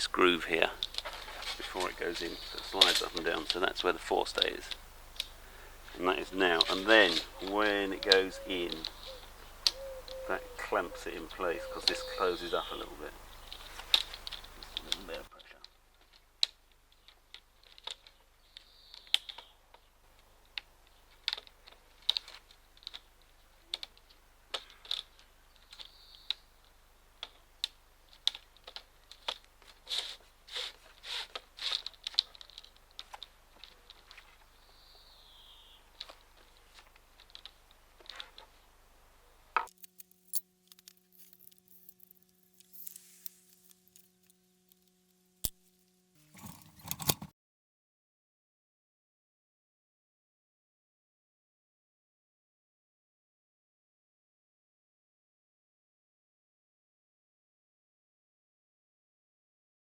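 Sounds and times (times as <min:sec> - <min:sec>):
steady low hum: 0:00.0 - 0:15.4.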